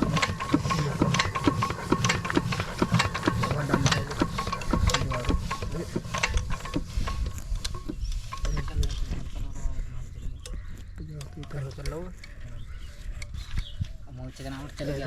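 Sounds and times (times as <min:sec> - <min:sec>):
machinery clicking and knocking: 0:00.0 - 0:09.3.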